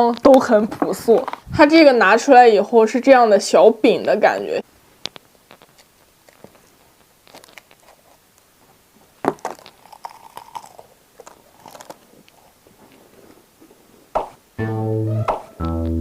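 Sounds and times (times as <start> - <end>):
crunchy biscuit being chewed: 5.5 - 8.5, 9.3 - 13.0
guitar music: 14.6 - 16.0.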